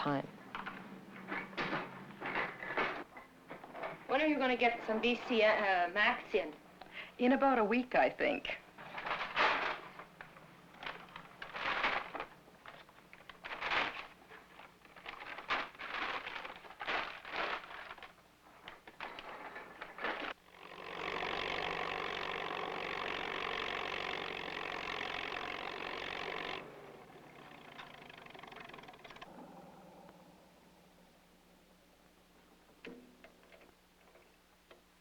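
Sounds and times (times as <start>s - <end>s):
machine drone: 0.0s - 4.0s, 20.5s - 32.6s
irregular knocks and clatters: 0.1s - 7.0s, 7.8s - 35.0s.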